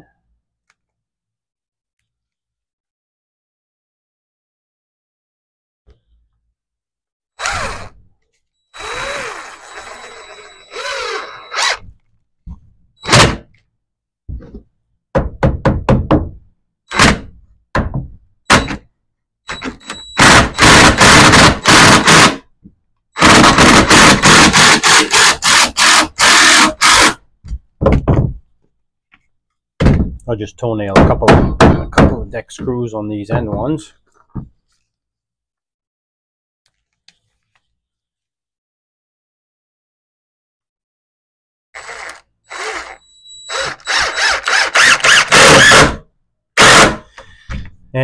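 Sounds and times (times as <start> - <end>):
power driver whirring: 8.8 - 11.9, 41.8 - 45.9
power driver rapid impacts: 20.2 - 22.4, 23.2 - 27.2, 43.6 - 46.0, 46.6 - 47.2.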